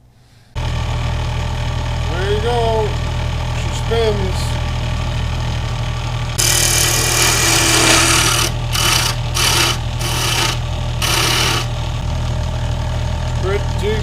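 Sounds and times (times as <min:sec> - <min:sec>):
tool scraping spinning wood: 0:06.4 - 0:11.8
wood lathe humming: 0:06.4 - 0:12.0.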